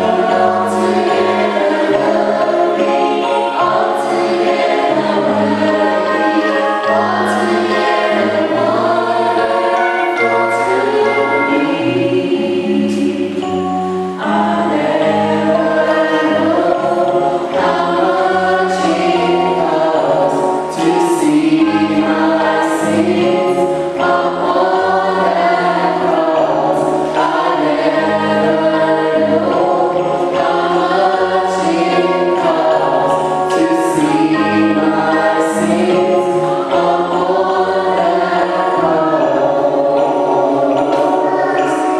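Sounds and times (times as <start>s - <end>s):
choir singing in harmony: 0.0s - 41.9s.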